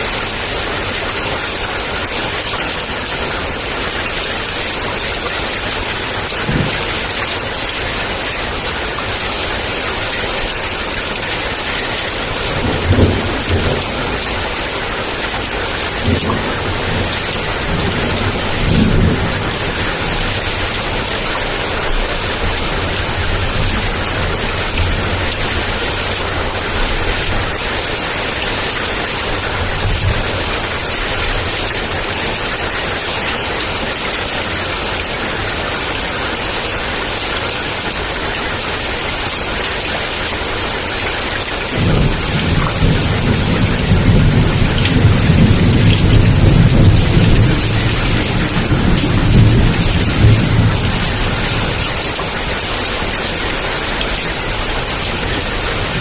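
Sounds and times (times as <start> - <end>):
heavy rain pouring: 0.0 - 56.0
low rumble of thunder: 12.3 - 27.6, 41.7 - 52.1.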